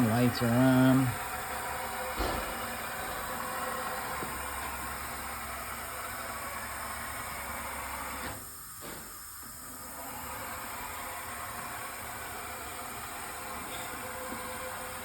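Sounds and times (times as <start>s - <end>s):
machine drive humming: 0.0s - 8.2s.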